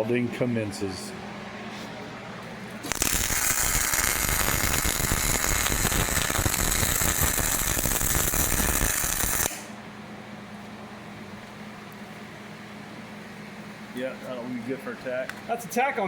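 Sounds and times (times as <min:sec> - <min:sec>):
electric arc welder crackling: 0:02.8 - 0:09.8.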